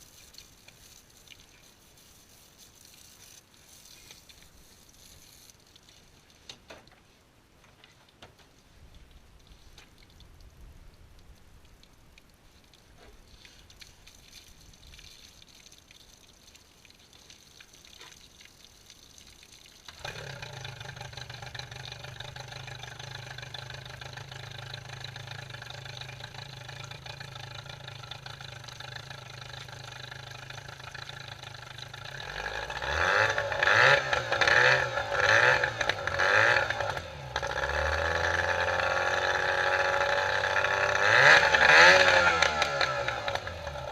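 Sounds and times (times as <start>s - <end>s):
engine starting: 19.9s - 21.4s
engine revving: 20.0s - 23.3s, 32.0s - 43.9s
engine idling: 20.0s - 41.2s.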